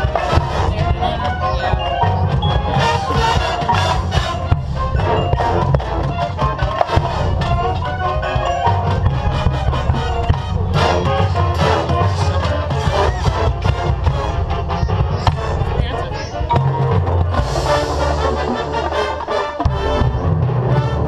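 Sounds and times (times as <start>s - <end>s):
drums and mallet percussion: 0.0s - 21.0s
marching band wind chords: 0.0s - 21.0s.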